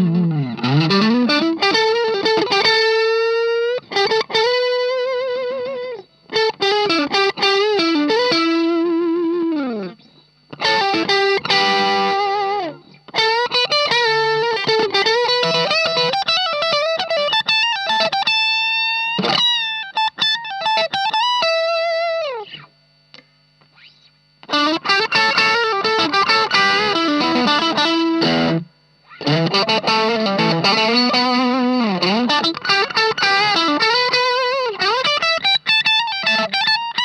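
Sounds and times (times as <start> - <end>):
overdriven electric guitar lead: 0.0 - 37.0.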